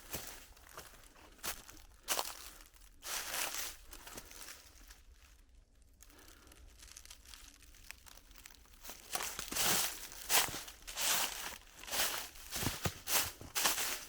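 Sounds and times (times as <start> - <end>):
footsteps on forest trail: 0.0 - 4.8, 8.8 - 14.0.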